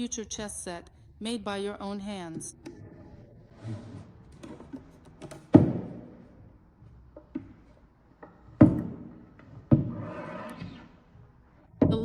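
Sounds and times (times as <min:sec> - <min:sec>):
hollow wooden knocks: 0:04.4 - 0:06.2, 0:07.1 - 0:10.0.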